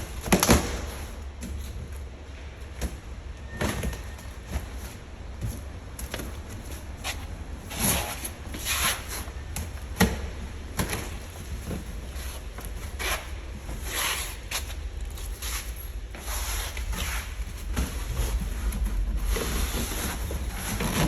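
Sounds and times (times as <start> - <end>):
steady low rumble: 9.2 - 21.0.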